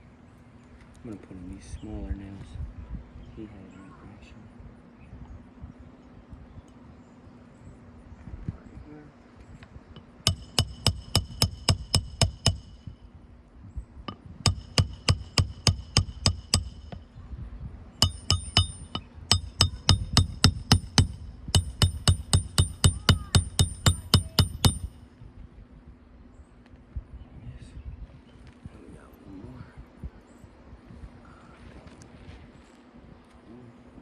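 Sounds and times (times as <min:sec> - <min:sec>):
hammer driving nails: 0:10.3 - 0:12.8, 0:14.5 - 0:17.0, 0:18.0 - 0:24.9.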